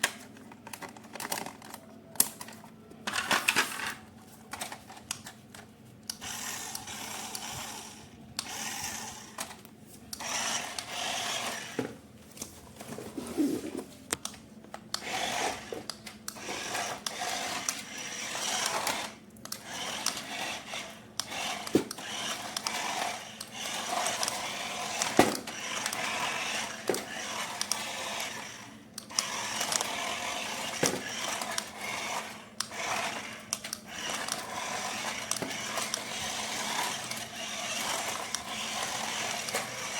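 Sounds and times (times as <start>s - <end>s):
small electric motor whirring: 6.1s - 9.5s, 10.2s - 11.8s, 15.0s - 39.9s.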